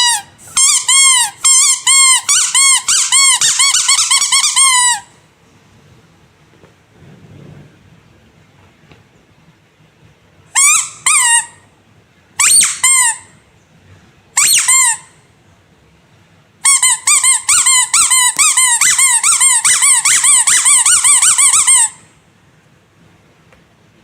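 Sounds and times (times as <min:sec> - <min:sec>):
squeaky rubber toy squeaking: 0:00.0 - 0:05.2, 0:10.5 - 0:11.7, 0:12.4 - 0:13.4, 0:14.4 - 0:15.2, 0:16.6 - 0:22.1.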